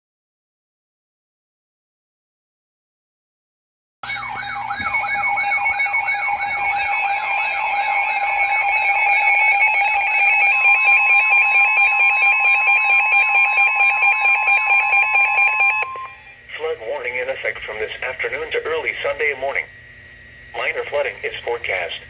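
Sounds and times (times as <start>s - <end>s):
rapid pulsing beeps: 4.0s - 16.2s
falling siren sweep: 4.0s - 16.5s
steady and warbling alarm tones: 4.0s - 22.0s.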